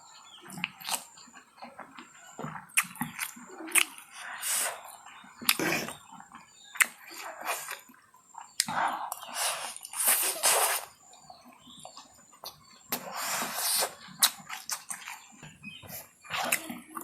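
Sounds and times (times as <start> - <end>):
wet chewing clicks: 0.0 - 17.0
noodles being slurped: 8.6 - 11.0, 12.9 - 15.3.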